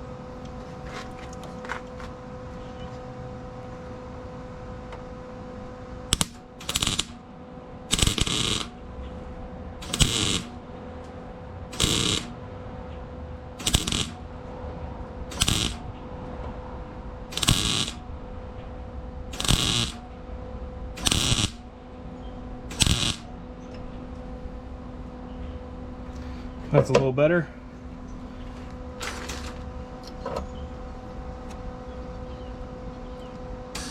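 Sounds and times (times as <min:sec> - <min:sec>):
welder steady hum: 0:00.0 - 0:33.9
welder crackling bursts: 0:06.1 - 0:07.3, 0:07.9 - 0:09.1, 0:09.8 - 0:10.8, 0:11.4 - 0:12.5, 0:13.5 - 0:14.5, 0:15.1 - 0:16.1, 0:16.9 - 0:20.3, 0:20.9 - 0:23.6.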